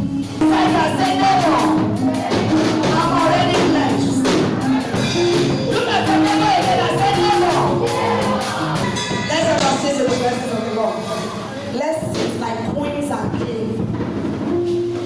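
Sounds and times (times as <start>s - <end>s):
people singing praise music: 0.0s - 11.8s
percussion beat: 0.0s - 15.0s.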